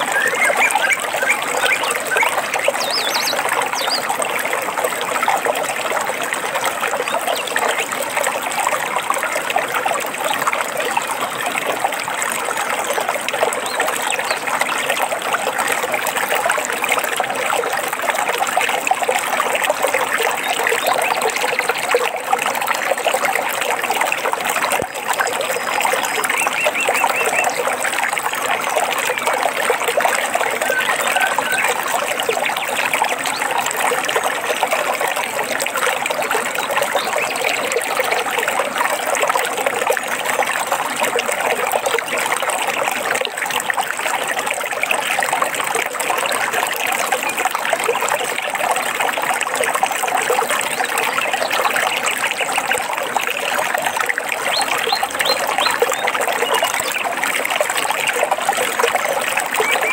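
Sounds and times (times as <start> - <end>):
faint bird chirps: 0.0 - 4.0, 30.6 - 31.8
stream water babbling: 0.0 - 59.9.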